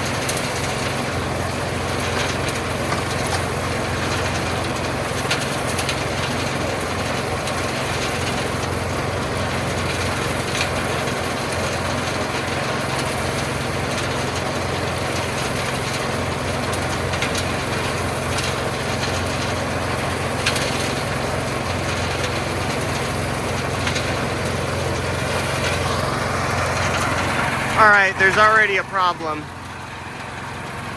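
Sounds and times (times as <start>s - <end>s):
small engine running: 0.0s - 30.9s
gravel clacking against drum: 2.0s - 6.0s.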